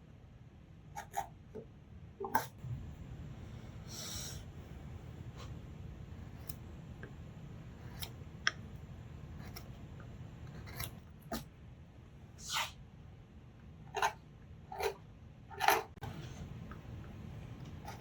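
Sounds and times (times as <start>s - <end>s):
low steady hum: 0.0s - 18.0s
chisel slicing scrapes on wood: 10.5s - 11.5s.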